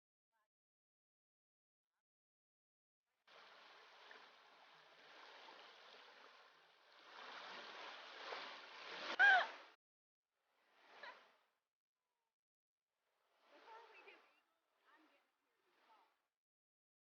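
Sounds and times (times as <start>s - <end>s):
creek water running over rocks: 3.3s - 9.5s.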